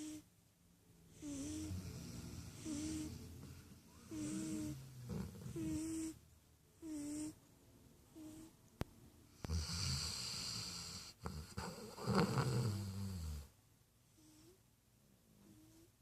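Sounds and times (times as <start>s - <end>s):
pet snoring: 0.0s - 0.3s, 1.1s - 6.2s, 6.8s - 7.4s, 9.4s - 13.5s.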